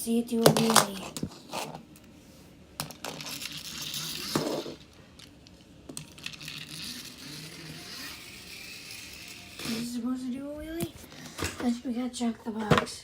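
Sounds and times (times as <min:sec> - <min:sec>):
toy wheels clicking and scraping: 0:02.8 - 0:10.0.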